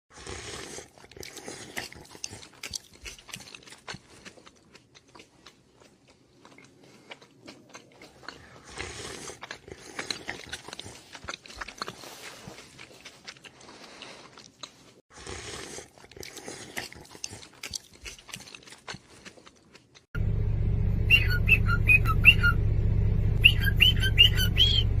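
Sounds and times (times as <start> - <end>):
animal crunching and chewing: 0.1 - 20.1.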